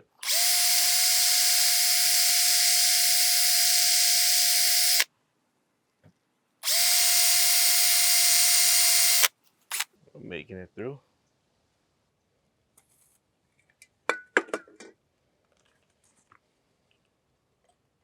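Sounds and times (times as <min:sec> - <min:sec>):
electric drill running: 0:00.0 - 0:05.1, 0:06.6 - 0:09.8.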